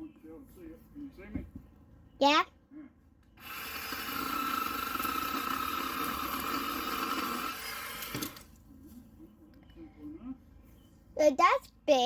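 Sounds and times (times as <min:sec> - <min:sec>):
chainsaw cutting tree trunk: 0:03.4 - 0:08.5.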